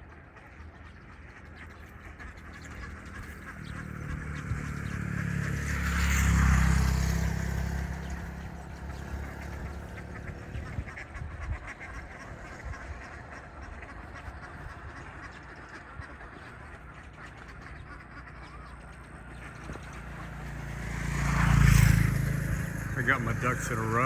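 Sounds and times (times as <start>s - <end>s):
ducks quacking: 0.0s - 24.0s.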